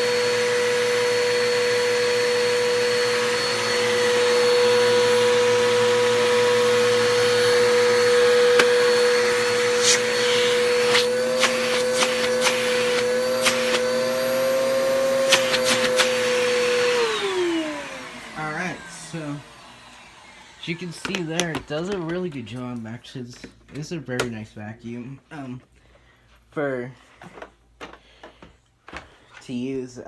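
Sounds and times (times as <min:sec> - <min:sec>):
vacuum cleaner motor whine: 0:00.0 - 0:22.3.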